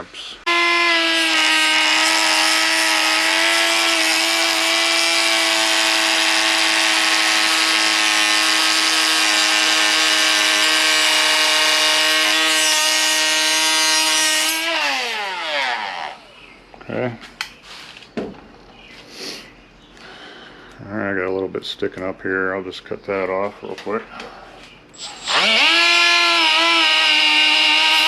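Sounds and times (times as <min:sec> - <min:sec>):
high-speed power tool running: 0:00.5 - 0:16.3, 0:25.0 - 0:28.0.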